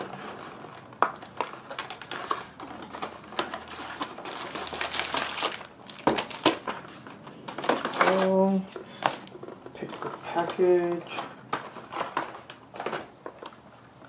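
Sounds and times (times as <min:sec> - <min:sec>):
cardboard packaging handled: 0:00.0 - 0:14.0.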